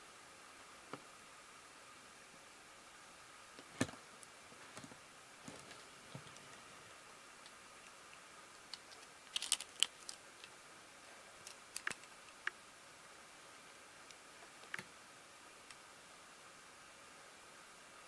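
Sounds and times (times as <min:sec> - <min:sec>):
faint hiss: 0:00.0 - 0:18.0.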